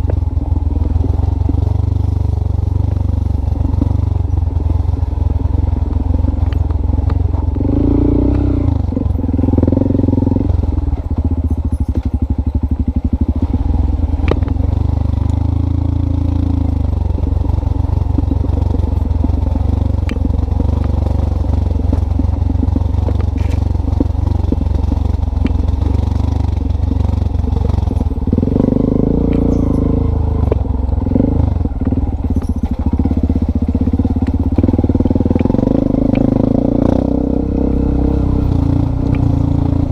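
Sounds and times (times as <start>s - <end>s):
engine rumbling: 0.0s - 39.9s.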